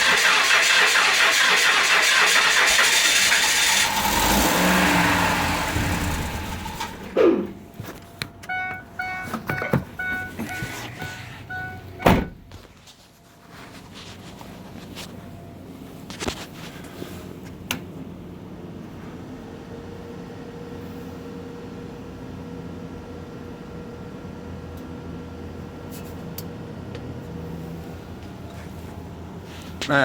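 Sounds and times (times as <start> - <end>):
engine cranking harshly: 0.0 - 7.2.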